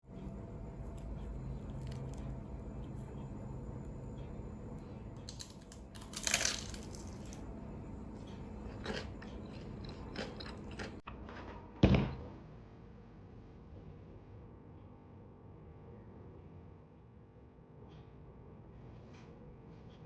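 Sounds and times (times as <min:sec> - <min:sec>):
crunchy chewing of fried food: 0:00.1 - 0:11.0.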